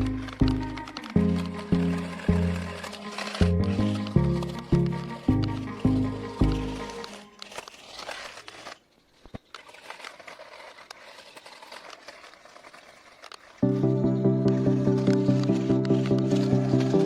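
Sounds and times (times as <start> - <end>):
background music: 0.0 - 7.2, 13.6 - 17.0
faint crinkling and scraping: 0.0 - 13.6, 14.9 - 17.0.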